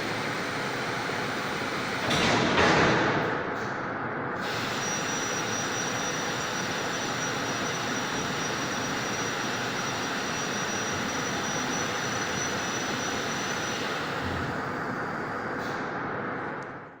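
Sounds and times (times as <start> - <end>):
faint high whine: 4.5 - 15.6.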